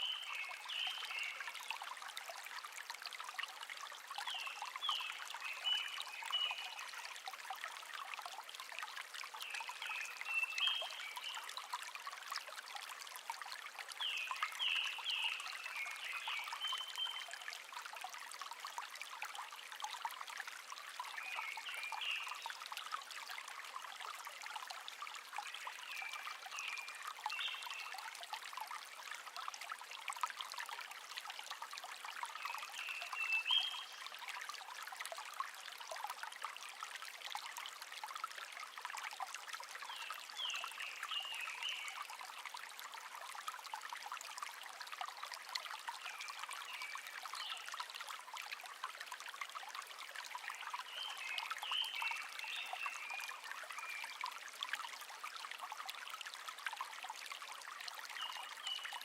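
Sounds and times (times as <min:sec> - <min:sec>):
stream babbling: 0:00.0 - 0:59.0
songbird singing: 0:32.6 - 0:34.0.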